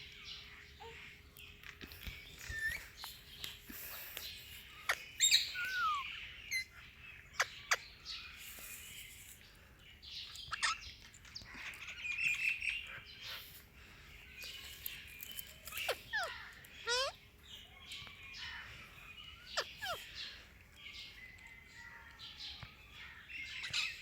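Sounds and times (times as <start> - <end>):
parakeet chirps and squawks: 2.4 - 3.1, 4.7 - 8.8, 10.4 - 13.5, 15.5 - 17.3, 19.2 - 20.3, 22.9 - 24.0.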